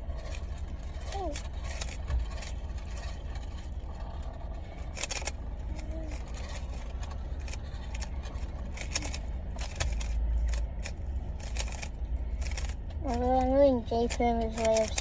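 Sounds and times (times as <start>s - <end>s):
car cabin rumble: 0.0s - 15.0s
puzzle cube plastic clicks: 4.8s - 15.0s.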